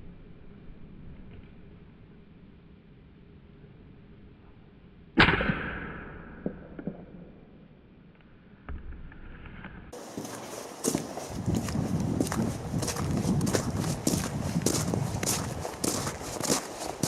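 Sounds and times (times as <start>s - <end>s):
air rifle shot: 5.2s - 6.6s
rustling noise: 10.0s - 17.0s.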